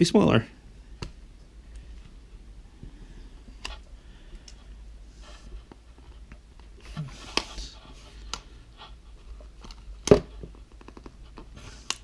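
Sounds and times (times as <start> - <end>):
packaging clicks and taps: 9.6 - 12.0.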